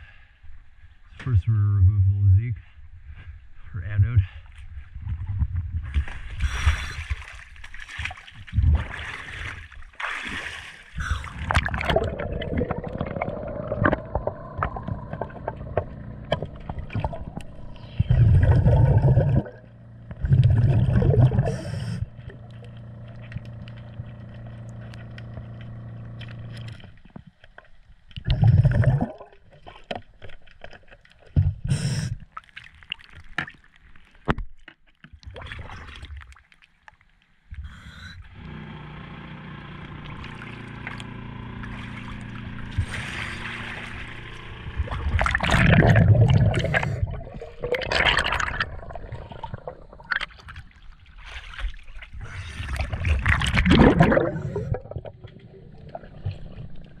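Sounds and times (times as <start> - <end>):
gurgling exhaled bubbles: 8.4 - 23.3, 28.2 - 29.6, 41.6 - 57.0
steady low hum: 10.9 - 29.0, 37.5 - 50.1, 52.2 - 57.0.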